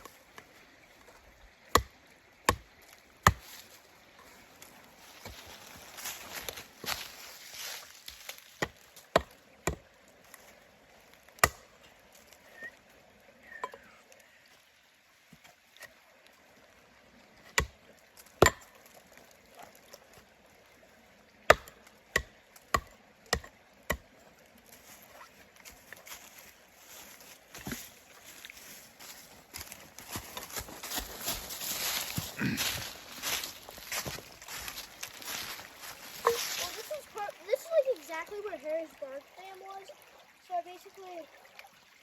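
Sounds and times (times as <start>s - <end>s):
wooden knocks breaking logs: 18.4s - 18.7s.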